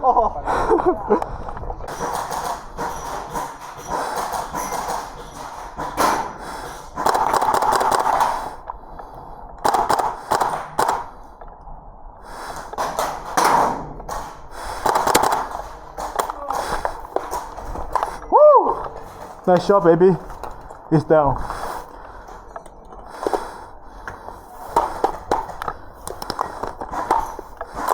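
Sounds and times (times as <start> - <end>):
airsoft gun shots: 1.9 - 8.6, 9.6 - 11.1, 12.8 - 16.4.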